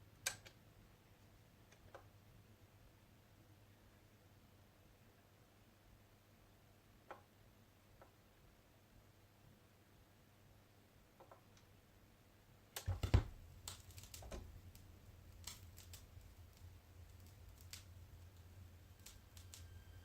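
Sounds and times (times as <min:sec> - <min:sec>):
vinyl record clicks and pops: 0:00.2 - 0:00.6, 0:12.8 - 0:20.0
low hum: 0:14.5 - 0:20.0.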